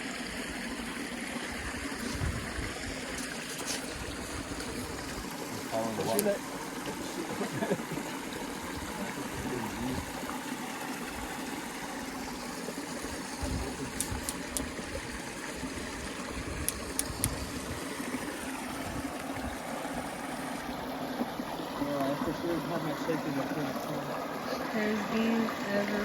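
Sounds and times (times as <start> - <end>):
creek trickling over rocks: 0.0 - 26.0
faint sharp clicks: 16.7 - 17.4.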